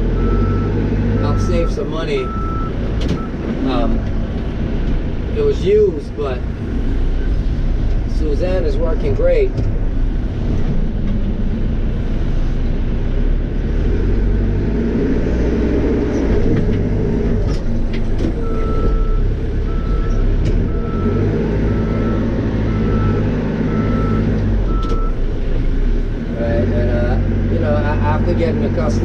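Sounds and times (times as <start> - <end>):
diesel engine running: 0.0 - 29.0
reversing alarm beeps: 1.3 - 3.3, 18.4 - 25.2.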